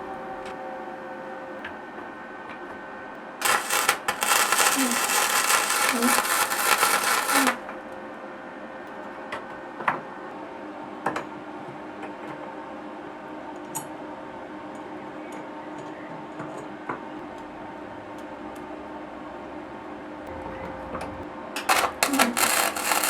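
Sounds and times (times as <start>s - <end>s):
faint two-tone hum: 20.3s - 23.0s.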